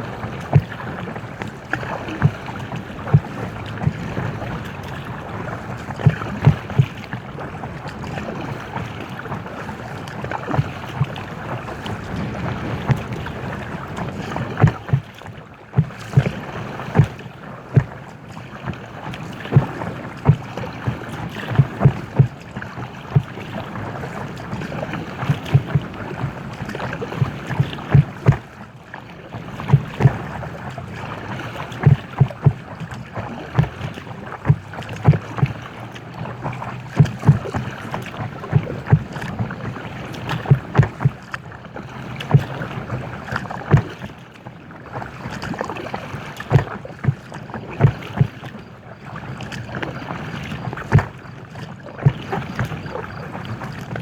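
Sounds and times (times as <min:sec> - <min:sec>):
wind on microphone: 0:00.0 - 0:41.4
paddle strokes in water: 0:00.0 - 0:54.0.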